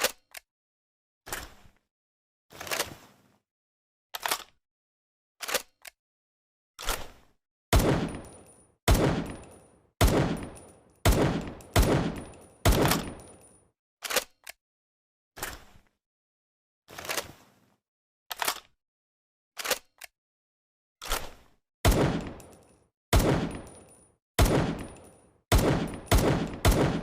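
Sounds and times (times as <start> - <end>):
imitation pistol shots: 7.8 - 8.2, 8.9 - 13.2, 21.9 - 22.4, 23.2 - 23.7, 24.4 - 27.0.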